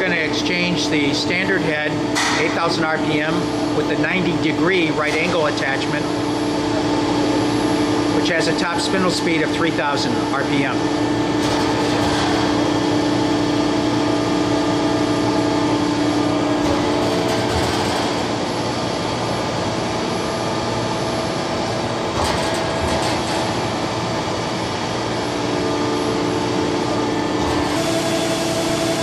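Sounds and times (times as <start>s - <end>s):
machining center humming: 0.0s - 29.0s
machine clunk: 2.1s - 2.7s, 11.4s - 12.6s, 16.6s - 18.5s, 22.1s - 23.8s.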